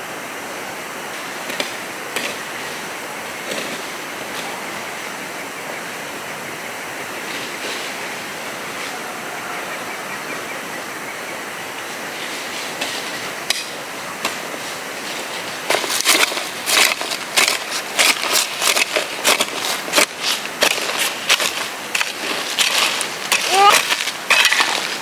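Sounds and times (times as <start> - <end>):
flowing water rushing: 0.0 - 25.0.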